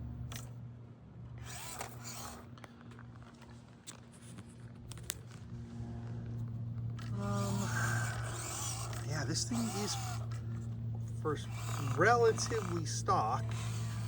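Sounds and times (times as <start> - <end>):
toy car motor whirring: 1.4 - 5.2, 6.9 - 14.0.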